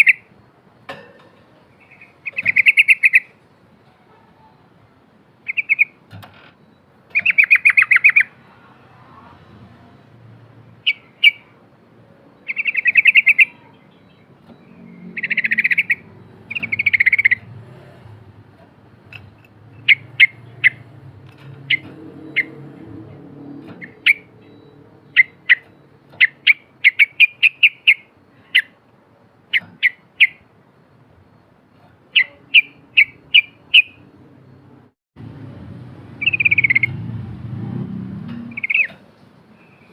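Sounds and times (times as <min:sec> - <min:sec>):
bird singing with rattling chatters: 0:00.0 - 0:00.4, 0:01.4 - 0:03.6, 0:05.4 - 0:08.4, 0:10.8 - 0:11.6, 0:12.4 - 0:18.2, 0:19.0 - 0:28.8, 0:29.4 - 0:30.5, 0:32.1 - 0:34.1, 0:36.2 - 0:37.0, 0:38.4 - 0:39.9
sharp bird chirps: 0:00.0 - 0:00.4, 0:01.7 - 0:03.4, 0:05.4 - 0:06.0, 0:06.7 - 0:08.6, 0:10.8 - 0:11.6, 0:12.3 - 0:18.0, 0:19.0 - 0:28.8, 0:32.1 - 0:34.7, 0:36.2 - 0:37.1, 0:38.5 - 0:39.9.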